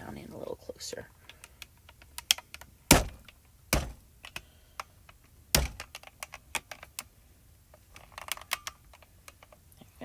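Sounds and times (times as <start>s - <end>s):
objects clicking and tapping: 1.3s - 7.1s
hard knocks: 2.9s - 4.1s, 5.5s - 6.0s.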